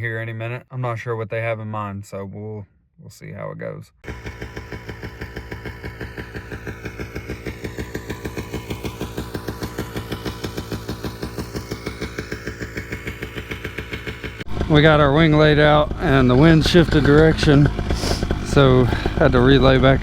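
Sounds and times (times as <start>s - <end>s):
paramotor engine running: 4.0s - 20.0s.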